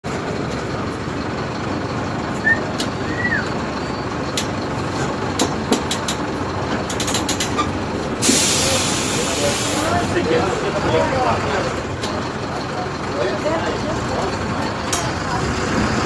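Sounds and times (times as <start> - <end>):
bus diesel engine running: 0.0 - 16.0.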